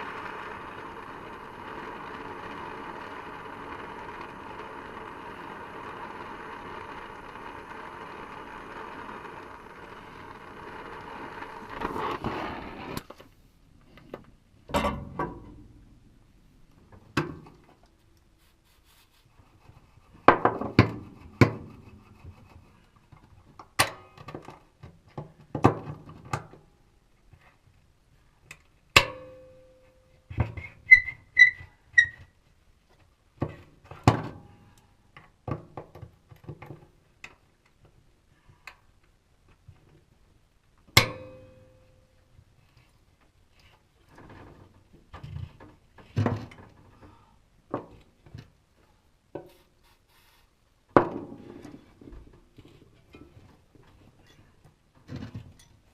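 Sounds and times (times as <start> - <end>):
short high squeaks: 30.6 - 32.4.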